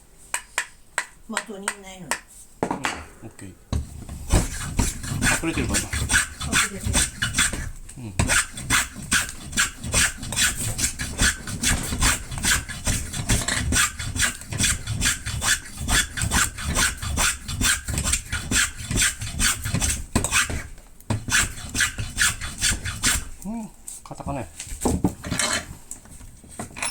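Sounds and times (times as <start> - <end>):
hand tool rasping wood: 3.7 - 23.5.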